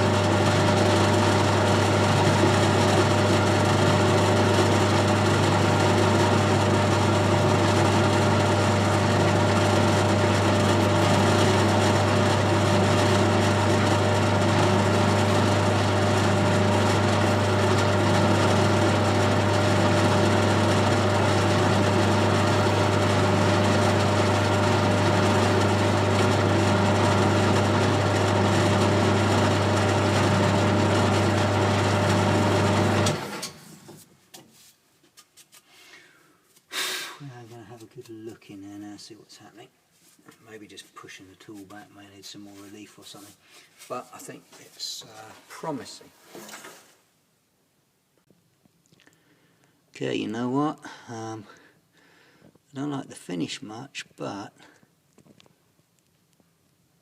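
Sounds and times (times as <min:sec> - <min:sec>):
lathe humming: 0:00.0 - 0:33.5.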